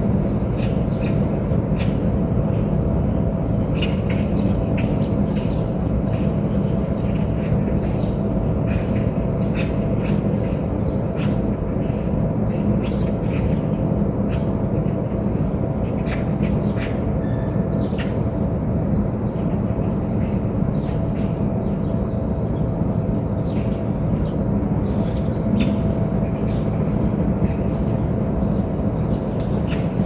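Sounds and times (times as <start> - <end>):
steady low rumble: 0.0 - 30.0
small birds chirping: 3.8 - 30.0.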